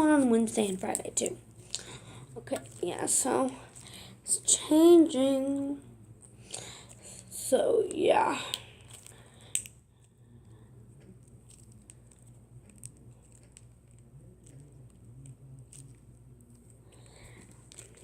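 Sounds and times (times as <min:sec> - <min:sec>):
low steady hum: 0:00.0 - 0:18.0
putty squishing and clicking: 0:08.5 - 0:09.8.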